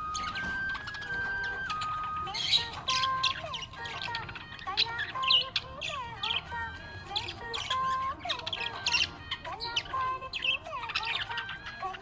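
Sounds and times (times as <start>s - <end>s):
budgerigars chirping and warbling: 0.0s - 12.0s.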